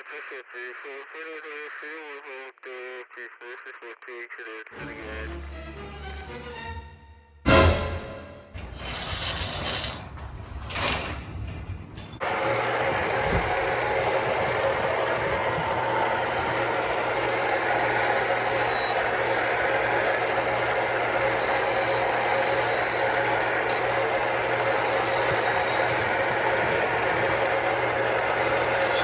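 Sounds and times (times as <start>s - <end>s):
engine running steadily: 10.2s - 29.0s.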